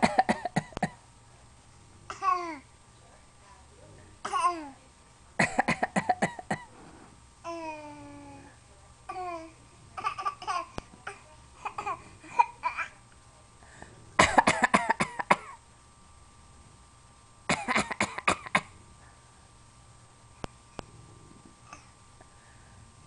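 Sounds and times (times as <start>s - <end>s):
person fake coughing: 0.0s - 1.0s, 5.4s - 6.7s, 14.2s - 15.6s, 17.5s - 18.7s.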